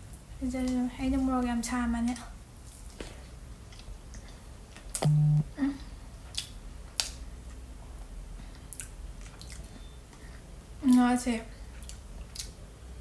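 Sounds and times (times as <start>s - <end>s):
short loud low hum: 5.0s - 5.5s
wet clicks and squishes eating fruit: 8.7s - 9.7s, 11.8s - 12.6s.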